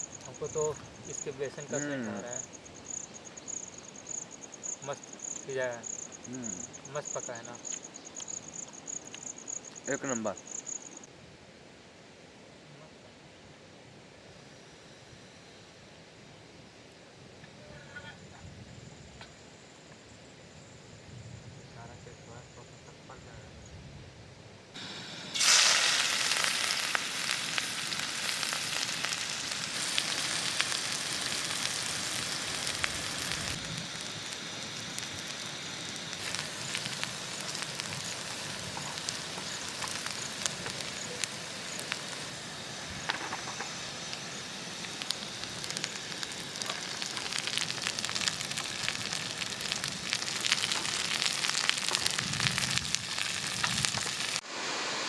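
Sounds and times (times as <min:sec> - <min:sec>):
food sizzling in hot oil: 0:24.8 - 0:55.0.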